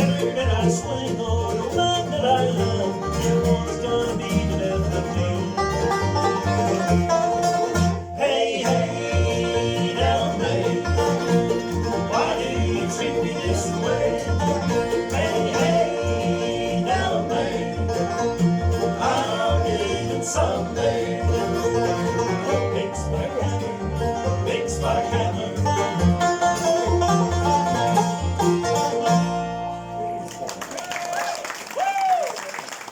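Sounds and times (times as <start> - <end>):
steady bass: 0.0 - 30.3
guitar picking: 0.0 - 30.4
banjo picking: 0.0 - 30.5.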